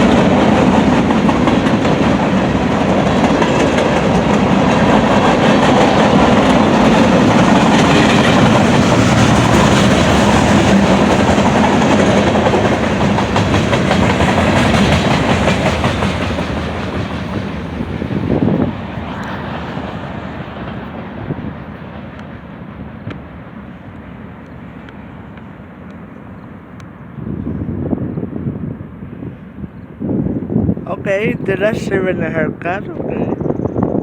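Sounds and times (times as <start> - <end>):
freight train rolling on rails: 0.0 - 34.0.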